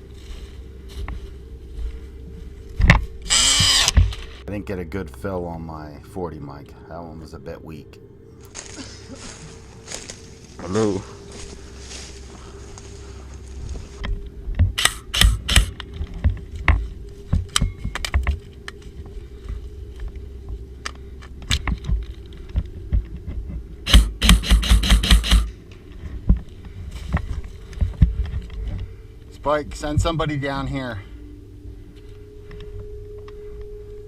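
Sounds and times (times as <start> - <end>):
gear clicks and rattle: 13.8 - 30.1
airsoft gunshots: 23.9 - 25.5
full-auto gunfire burst: 23.9 - 25.5.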